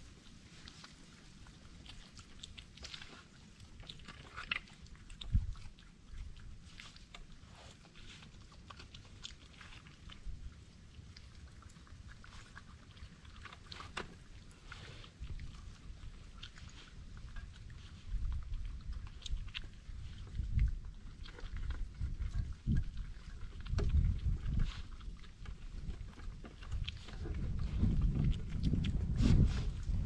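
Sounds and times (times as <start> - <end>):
animals chewing and crunching food: 0.0 - 30.0.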